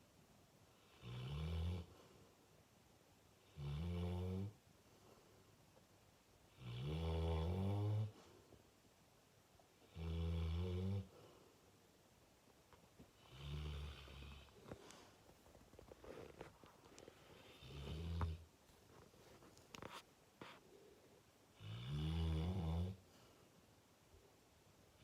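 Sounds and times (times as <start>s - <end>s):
dog snoring loudly: 0.8s - 1.9s, 6.5s - 8.2s, 13.2s - 14.5s, 21.6s - 23.0s.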